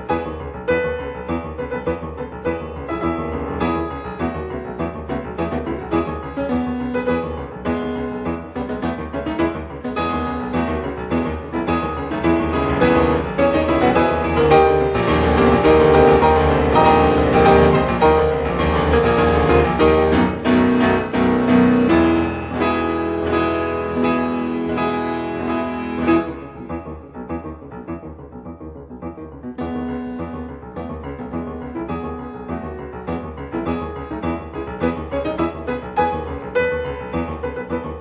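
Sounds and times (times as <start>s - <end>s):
piano music: 0.0s - 38.0s.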